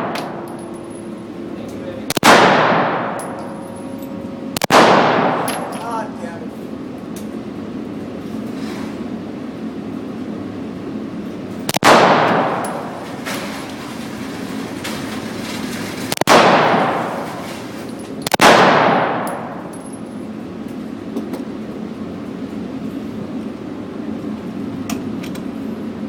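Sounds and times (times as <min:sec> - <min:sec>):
pistol shots echoing: 0:00.0 - 0:00.6, 0:02.1 - 0:03.4, 0:04.6 - 0:05.8, 0:11.7 - 0:13.0, 0:16.2 - 0:17.4, 0:18.2 - 0:19.7
steady background hum: 0:00.0 - 0:26.0.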